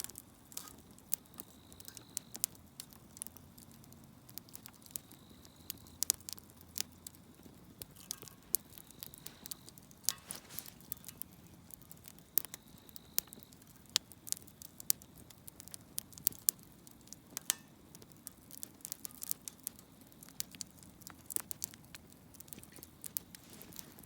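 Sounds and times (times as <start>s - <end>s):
campfire crackling and popping: 0.0s - 24.0s
faint hiss of flames: 0.0s - 24.0s.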